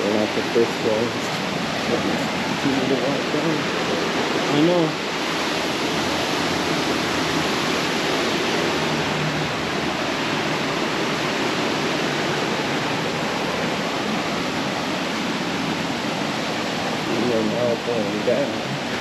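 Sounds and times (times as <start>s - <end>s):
waterfall roaring: 0.0s - 19.0s.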